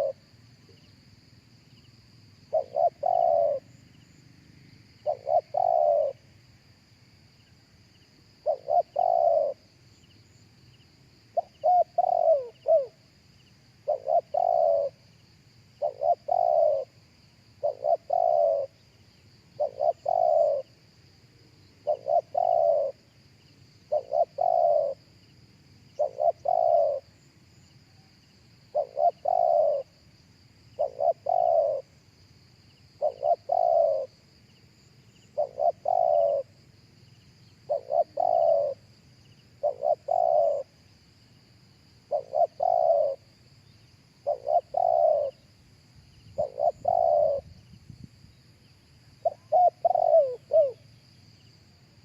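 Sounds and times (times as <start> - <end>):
dove cooing: 0.0 - 0.8, 2.5 - 3.7, 5.0 - 6.2, 8.4 - 9.7, 11.3 - 13.0, 13.8 - 15.0, 15.8 - 17.0, 17.6 - 18.8, 19.6 - 20.8, 21.8 - 23.1, 23.8 - 25.1, 25.9 - 27.2, 28.7 - 30.0, 30.8 - 32.0, 33.0 - 34.2, 35.1 - 36.6, 37.5 - 38.9, 39.6 - 40.8, 42.0 - 43.3, 44.2 - 45.4, 46.3 - 47.6, 49.2 - 50.9.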